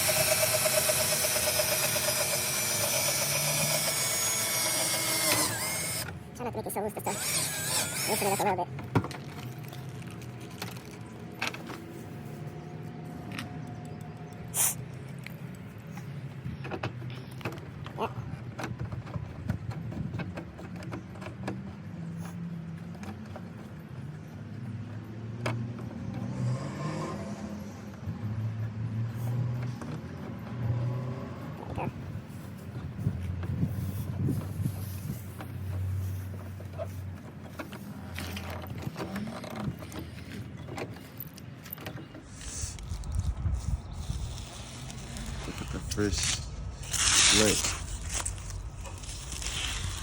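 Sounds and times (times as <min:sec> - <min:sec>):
electric drill boring: 0:00.0 - 0:06.2, 0:07.0 - 0:08.5
vehicle engine rumbling: 0:08.0 - 0:50.0.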